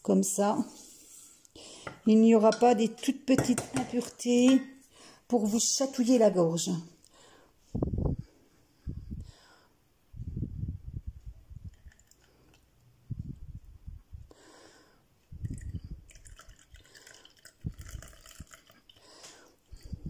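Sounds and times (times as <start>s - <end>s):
liquid pouring and dripping: 11.6s - 12.7s, 15.4s - 20.0s.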